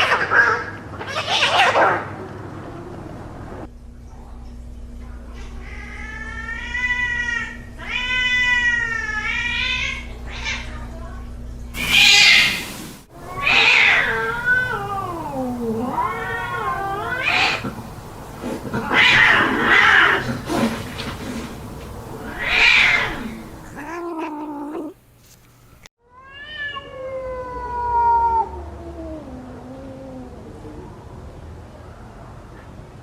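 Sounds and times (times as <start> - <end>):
cats yowling: 0.0 - 2.1, 5.4 - 10.8, 11.8 - 25.0, 26.1 - 30.5
cat hissing screeches: 11.8 - 25.0.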